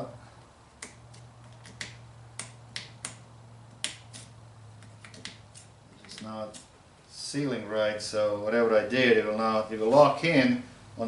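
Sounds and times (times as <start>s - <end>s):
steady low hum: 0.0s - 11.0s
sharp plastic clicks: 0.8s - 6.7s.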